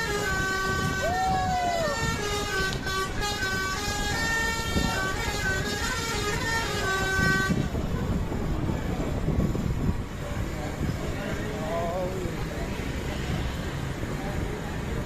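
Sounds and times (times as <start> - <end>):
multi-tone bus horn tune: 0.0 - 7.9.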